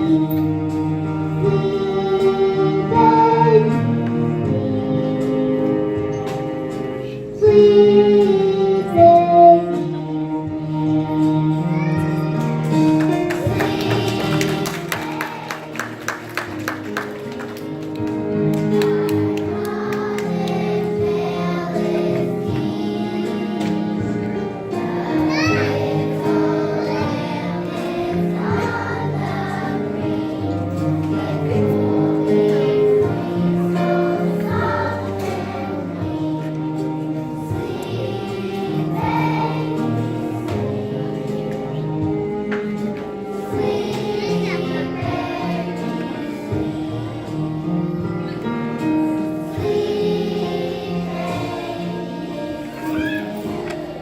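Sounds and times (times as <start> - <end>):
musical accompaniment: 0.0 - 54.0
child singing: 1.4 - 3.9, 7.0 - 15.8, 18.7 - 42.2, 43.4 - 48.5, 49.4 - 54.0.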